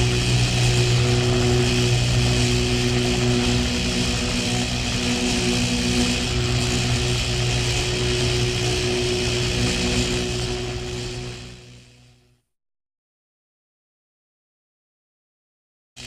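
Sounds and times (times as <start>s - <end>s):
harsh electrical hiss: 0.0s - 12.1s
electrical mains hum: 0.0s - 12.2s.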